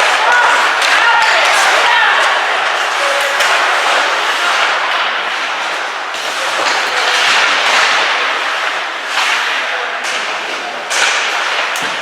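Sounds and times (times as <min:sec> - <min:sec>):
skate blades scraping ice: 0:00.0 - 0:12.0.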